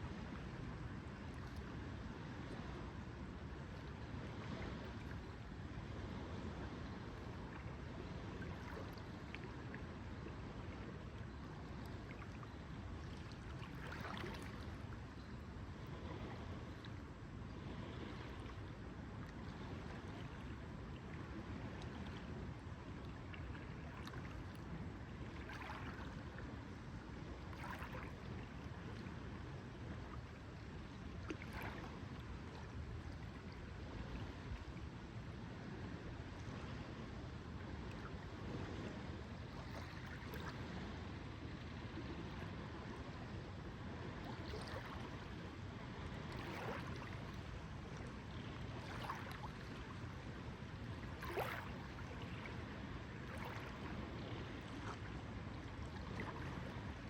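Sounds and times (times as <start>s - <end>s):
lake water lapping: 6.0s - 15.0s, 19.4s - 34.8s, 39.5s - 41.0s, 41.7s - 57.0s
brighter water splashes: 7.6s - 15.0s, 23.1s - 26.5s, 27.4s - 29.3s, 30.2s - 34.2s, 39.5s - 40.8s, 44.1s - 50.3s, 50.9s - 57.0s.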